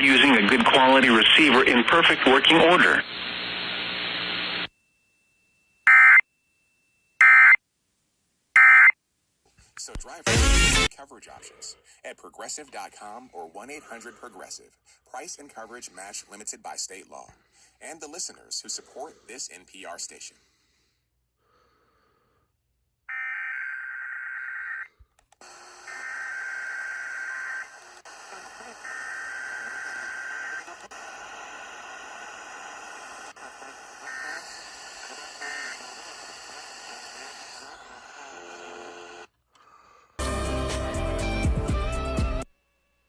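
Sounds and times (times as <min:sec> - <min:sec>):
radio static: 0:00.0 - 0:04.7, 0:09.8 - 0:20.4, 0:25.8 - 0:36.1
clicks: 0:25.0 - 0:25.5.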